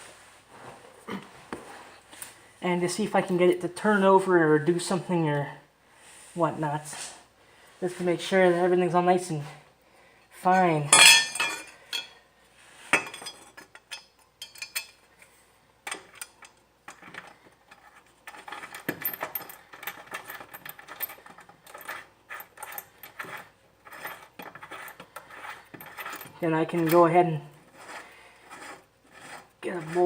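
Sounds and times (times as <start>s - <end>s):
metal tools clinking and rattling: 10.9s - 12.2s, 13.0s - 15.0s, 15.9s - 27.1s.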